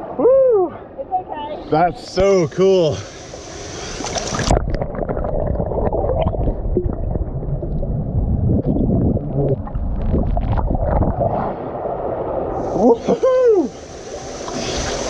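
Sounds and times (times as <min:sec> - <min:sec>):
underwater rumble of churning water: 0:03.3 - 0:12.9.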